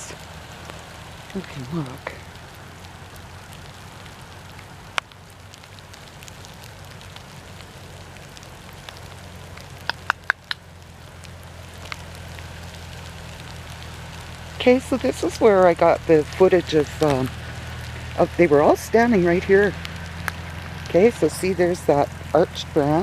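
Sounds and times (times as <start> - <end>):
heavy rain falling: 0.0 - 23.0
sharp taps: 9.8 - 10.6.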